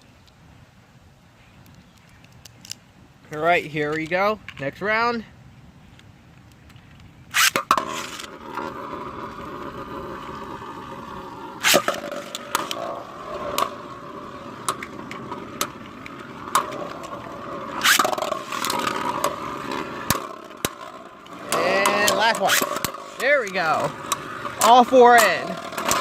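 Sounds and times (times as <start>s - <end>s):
spinning tops whirring: 7.4s - 26.0s
spinning tops launched clacking: 11.6s - 13.8s, 14.6s - 26.0s.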